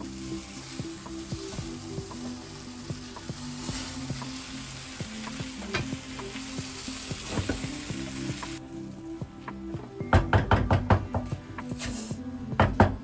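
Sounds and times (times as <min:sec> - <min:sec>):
rice sizzling in a pot: 0:00.0 - 0:08.6
background music: 0:00.0 - 0:13.0.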